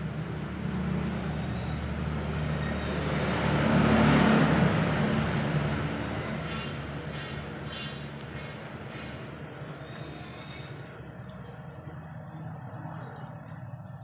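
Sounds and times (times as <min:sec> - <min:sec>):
vehicle passing by: 0:00.0 - 0:14.0.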